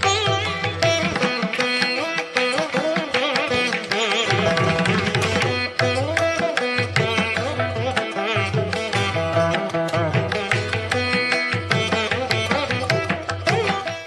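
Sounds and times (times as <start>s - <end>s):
plucked strings melody: 0.0s - 14.0s
hand drums beat: 3.4s - 13.9s.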